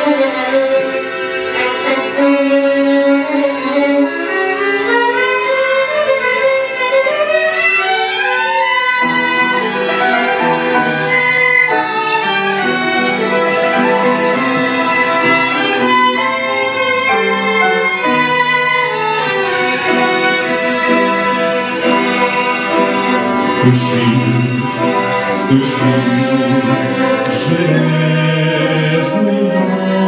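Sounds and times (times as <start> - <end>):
slow violin melody: 0.0 - 30.0.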